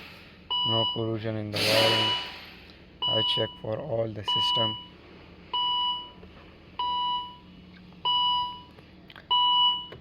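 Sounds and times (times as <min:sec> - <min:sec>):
two-tone electronic warning beeps: 0:00.5 - 0:01.2, 0:01.9 - 0:02.4, 0:03.0 - 0:06.2, 0:06.8 - 0:08.7, 0:09.3 - 0:10.0.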